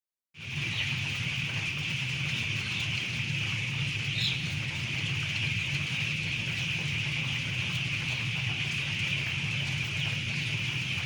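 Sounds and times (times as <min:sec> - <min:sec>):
chorus of chickens calling: 0:00.4 - 0:11.0.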